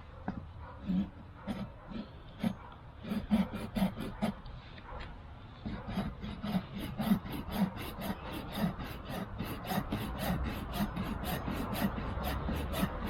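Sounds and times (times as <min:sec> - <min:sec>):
pull saw cutting branch: 0:02.4 - 0:04.4, 0:05.7 - 0:13.0.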